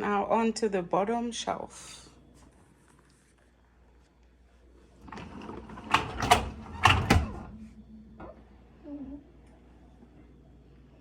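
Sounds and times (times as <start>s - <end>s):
dishwasher rack sliding and rattling: 5.0s - 7.5s.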